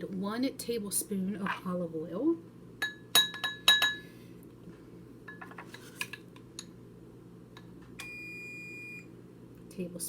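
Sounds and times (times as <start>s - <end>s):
utensils clinking on bowl: 2.8s - 4.0s.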